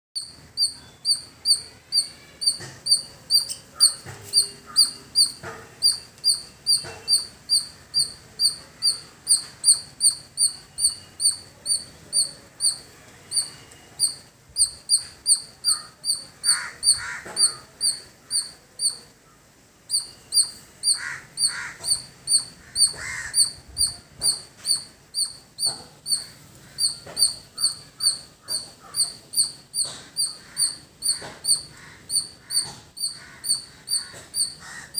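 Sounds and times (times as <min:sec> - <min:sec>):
squirrel chipping calls: 0:00.2 - 0:34.9.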